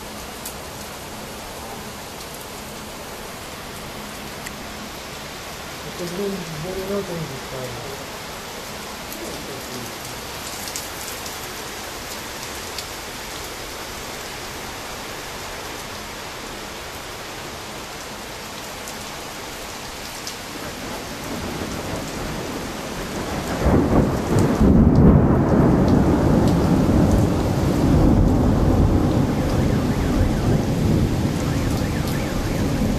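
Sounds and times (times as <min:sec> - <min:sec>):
steady rain: 0:00.0 - 0:32.9
thunder rumbling: 0:20.6 - 0:32.9.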